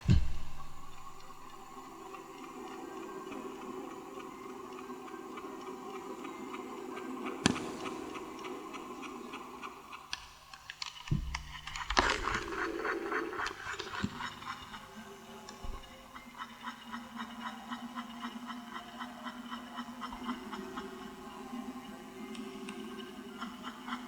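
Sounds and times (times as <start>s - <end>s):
low thumps: 0.0s - 2.1s
faint muffled hum: 0.0s - 10.1s
tape hiss: 0.0s - 24.0s.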